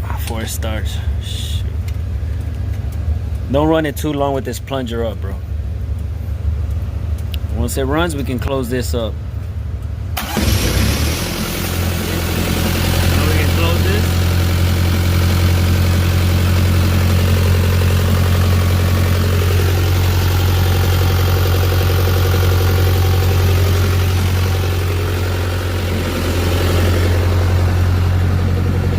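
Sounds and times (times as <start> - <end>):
diesel engine running: 0.0 - 28.9.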